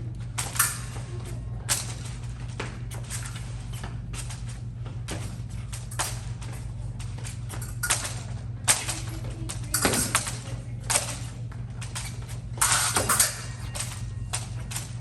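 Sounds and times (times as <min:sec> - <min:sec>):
steady low hum: 0:00.0 - 0:15.0
fencing blades clicking: 0:00.2 - 0:15.0
fencing footwork taps: 0:00.2 - 0:15.0.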